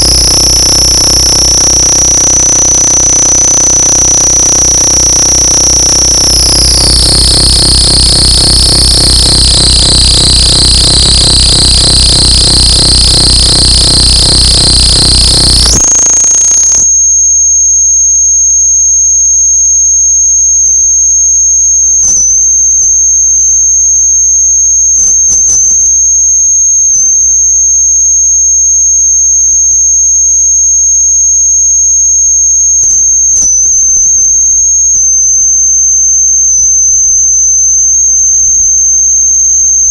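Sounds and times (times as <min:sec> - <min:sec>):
distorted electronic noise: 0:00.0 - 0:17.0, 0:24.0 - 0:26.1
low hum: 0:00.0 - 0:17.3
high-pitched whine: 0:00.0 - 0:17.6, 0:20.5 - 0:27.8, 0:32.3 - 0:39.9
scattered clicks: 0:06.1 - 0:16.9, 0:25.0 - 0:25.8.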